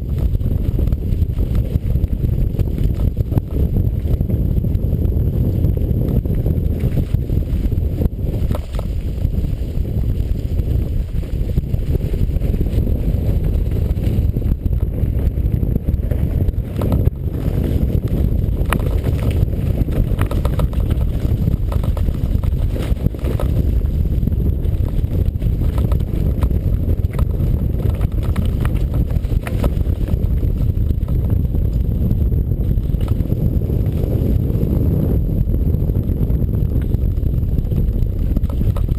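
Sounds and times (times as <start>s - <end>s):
wind buffeting microphone: 0.0s - 38.9s
knocks and rattles: 18.5s - 24.1s.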